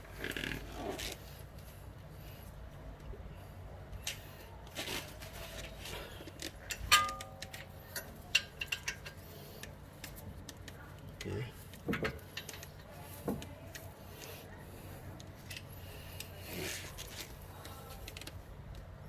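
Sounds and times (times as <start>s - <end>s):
metal tools clicking: 6.6s - 9.7s
ringing metal-on-metal knock: 6.9s - 7.4s.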